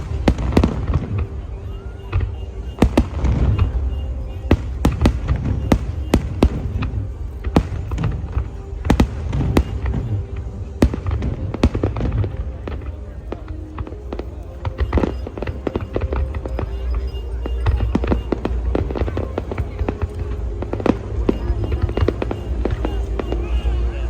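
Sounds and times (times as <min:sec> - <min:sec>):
continuous low rumble: 0:00.0 - 0:24.0
fireworks bangs: 0:00.0 - 0:24.0.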